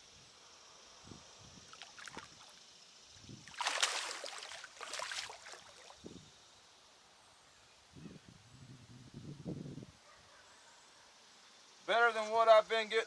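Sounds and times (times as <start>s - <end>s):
fish splashing in water: 3.4s - 6.0s.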